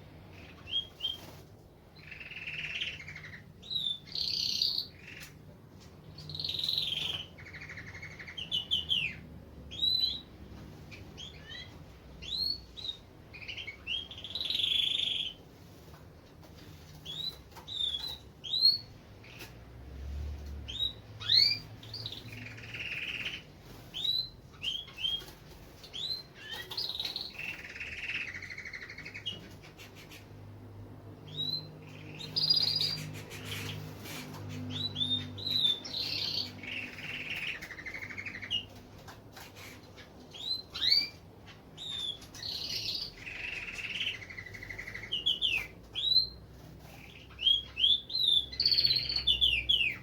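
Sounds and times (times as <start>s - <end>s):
canaries chirping: 0.0s - 50.0s
buzzy bird trills: 31.3s - 50.0s.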